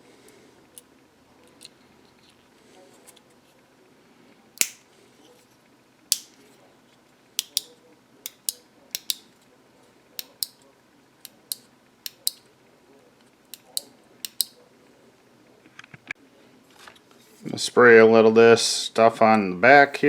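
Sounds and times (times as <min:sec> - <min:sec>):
plastic switch clicks: 0:04.6 - 0:04.8, 0:06.1 - 0:06.3, 0:07.4 - 0:07.7, 0:08.3 - 0:09.2, 0:13.5 - 0:14.5.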